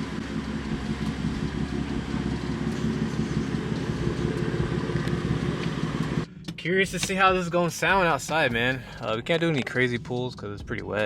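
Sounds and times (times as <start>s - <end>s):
car engine idling loudly: 0.0s - 7.2s.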